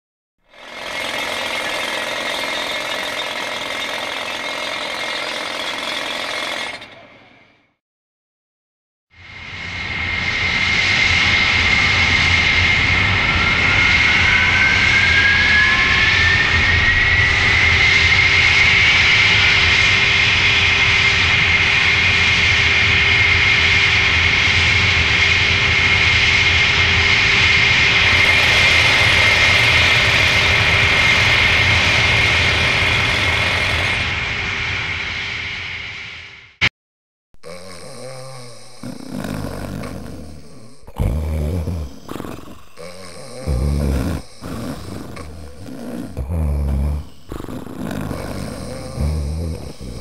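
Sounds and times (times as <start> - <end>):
engine-like roar with whine: 9.2 - 36.6
rising whine: 9.2 - 36.6.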